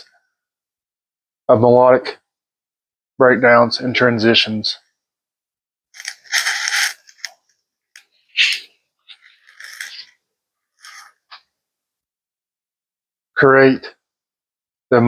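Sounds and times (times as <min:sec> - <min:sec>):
rustling scraping noises: 0:06.0 - 0:07.4, 0:08.4 - 0:10.2, 0:10.8 - 0:11.3.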